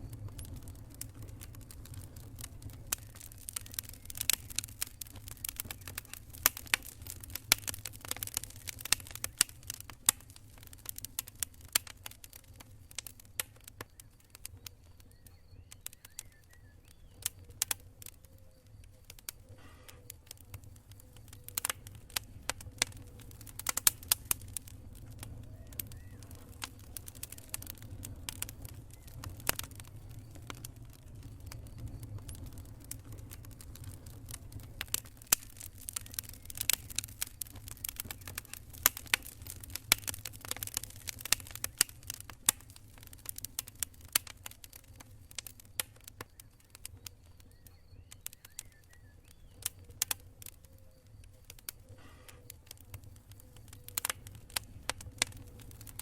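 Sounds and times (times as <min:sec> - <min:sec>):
low steady rumble: 0:00.0 - 0:07.8
campfire crackling and popping: 0:00.0 - 0:56.0.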